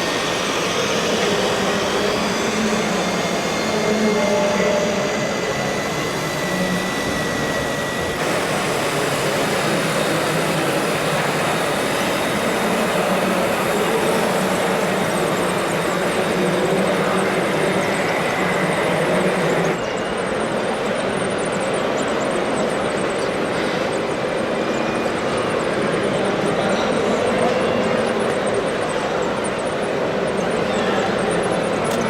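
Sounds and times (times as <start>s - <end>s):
model truck motors whirring: 0.0s - 19.9s
thin high whine: 0.0s - 20.0s.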